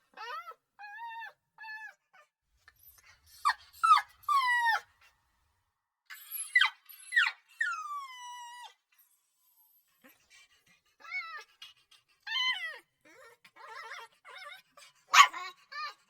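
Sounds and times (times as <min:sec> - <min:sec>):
puppy whimpering cries: 0:00.1 - 0:02.3, 0:03.3 - 0:04.9, 0:06.1 - 0:08.8, 0:12.3 - 0:16.0.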